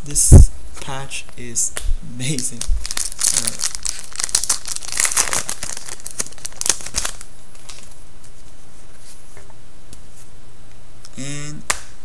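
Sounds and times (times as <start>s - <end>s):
foil wrapper crinkling and tearing: 2.4s - 8.0s.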